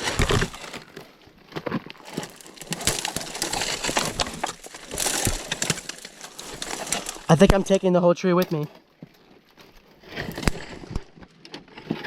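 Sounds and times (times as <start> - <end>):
twigs and branches snapping: 0.0 - 7.8, 10.1 - 11.2
brush rustling: 2.0 - 7.8.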